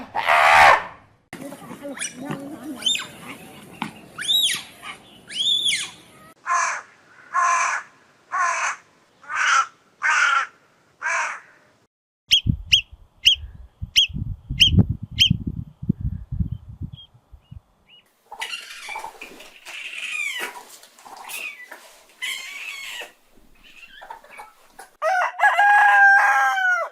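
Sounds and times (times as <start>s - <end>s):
bird cawing harshly: 5.7s - 11.7s.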